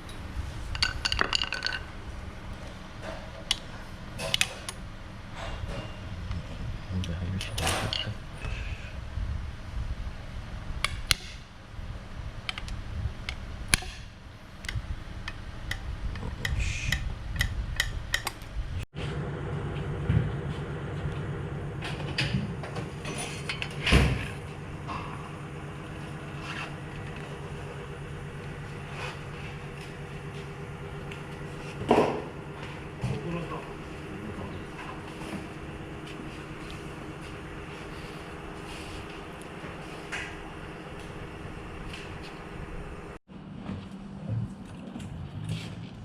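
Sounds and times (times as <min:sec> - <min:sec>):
low rumble: 0:04.8 - 0:46.0
car engine running: 0:18.6 - 0:43.2.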